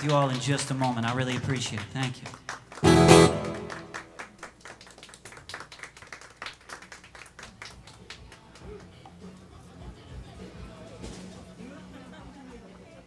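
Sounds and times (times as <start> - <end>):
audience clapping: 0.0 - 9.0.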